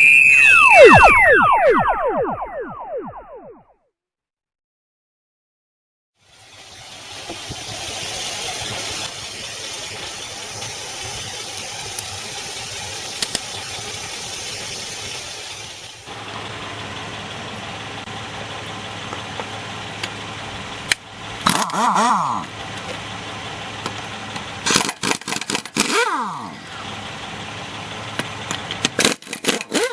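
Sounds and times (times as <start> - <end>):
air compressor running: 6.2 - 27.1
sharp clicks: 23.8 - 26.1.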